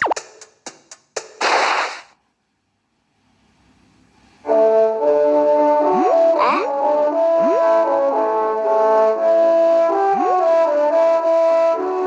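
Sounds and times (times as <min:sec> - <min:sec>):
brass music: 0:04.4 - 0:12.0.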